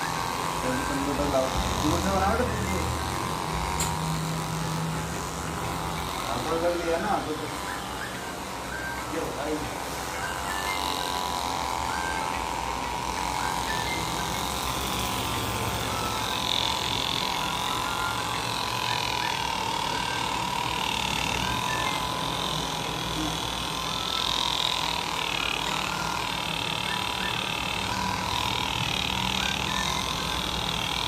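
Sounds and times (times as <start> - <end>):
small motor humming: 0.0 - 31.0.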